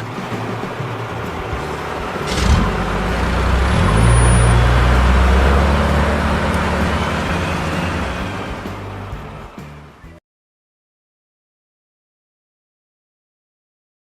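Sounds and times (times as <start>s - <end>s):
low engine rumble: 0.0s - 10.2s.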